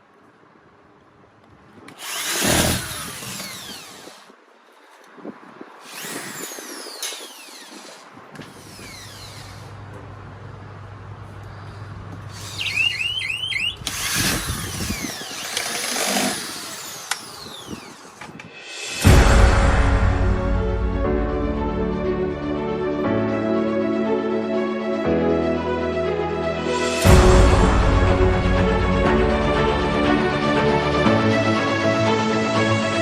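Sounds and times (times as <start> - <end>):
rising chirps: 12.4 - 14.0.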